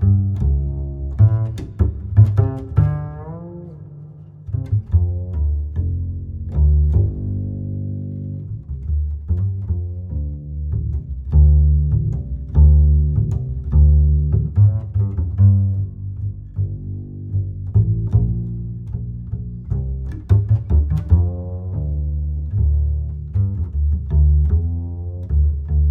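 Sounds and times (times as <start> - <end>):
music with heavy bass and strings: 0.0 - 25.9.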